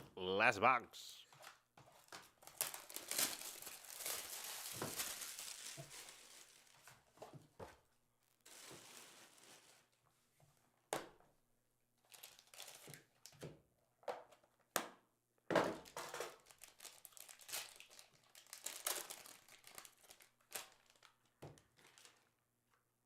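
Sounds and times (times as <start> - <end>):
plastic wrappers crinkling: 1.4 - 7.2, 8.4 - 10.0, 12.0 - 13.3, 15.8 - 22.4.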